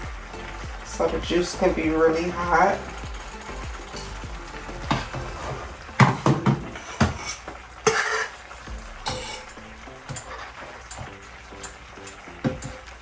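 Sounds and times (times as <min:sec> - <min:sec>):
quiet background music: 0:00.0 - 0:13.0
spoon clinking against pot: 0:09.1 - 0:09.5.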